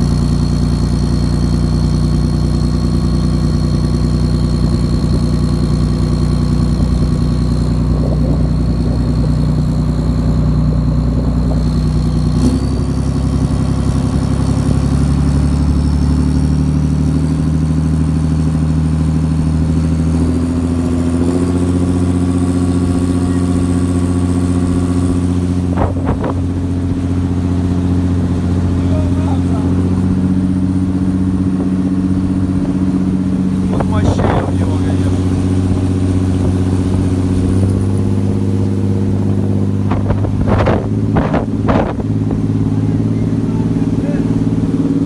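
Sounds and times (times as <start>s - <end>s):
vehicle engine running under load: 0.0s - 45.0s.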